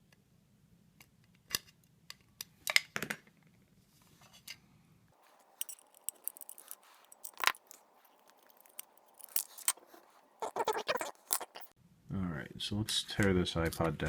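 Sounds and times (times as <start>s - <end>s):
small metal and plastic parts clicking: 5.2s - 11.7s.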